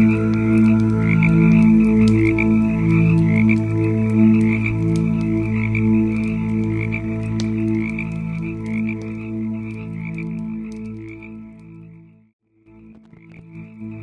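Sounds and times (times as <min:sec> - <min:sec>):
pulsing chirring: 0:00.0 - 0:06.5
low humming tones: 0:00.0 - 0:07.6
campfire crackling and popping: 0:00.0 - 0:11.8, 0:12.8 - 0:14.0.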